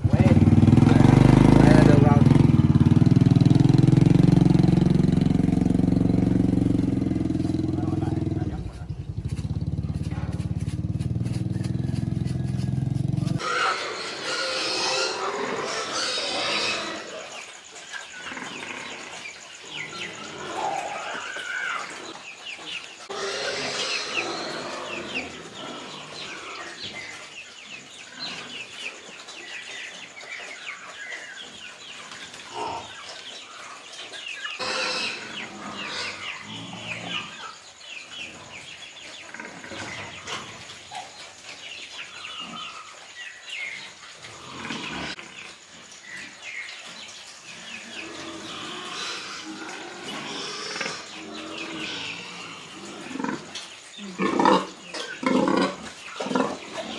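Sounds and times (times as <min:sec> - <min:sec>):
chickens clucking: 0:00.0 - 0:17.2.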